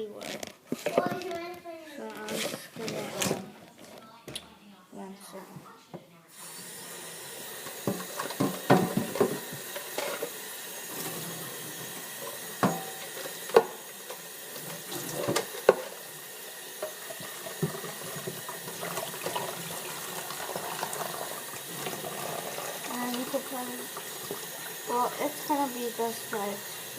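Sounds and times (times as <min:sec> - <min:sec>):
tap water running into sink: 0:06.4 - 0:26.9.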